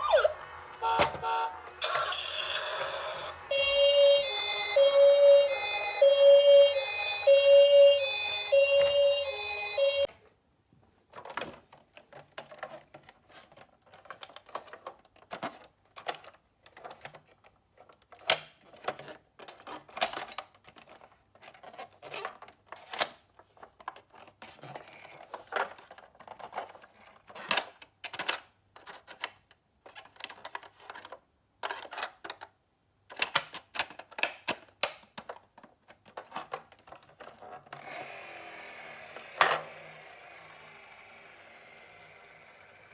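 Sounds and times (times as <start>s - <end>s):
toy cars clicking and clattering: 11.5s - 32.5s, 33.1s - 42.9s.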